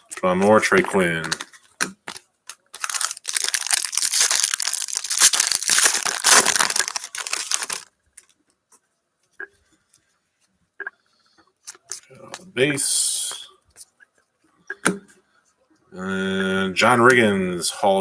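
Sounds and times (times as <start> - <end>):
foil wrapper tearing and crinkling: 1.2 - 7.9.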